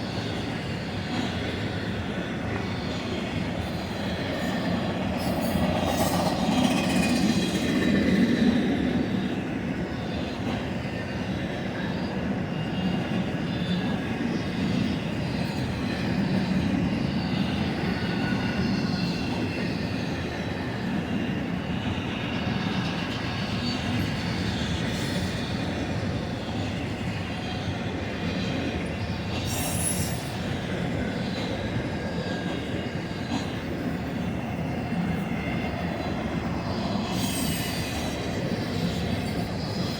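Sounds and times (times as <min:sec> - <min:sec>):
train wheels rumbling on rail: 0:00.0 - 0:39.9
wheel squeal: 0:36.7 - 0:39.9.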